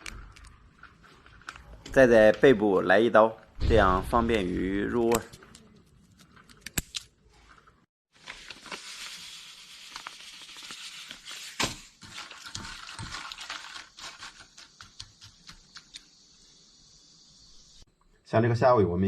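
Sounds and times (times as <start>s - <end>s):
crayfish shells crackling and clicking: 0.0s - 1.9s.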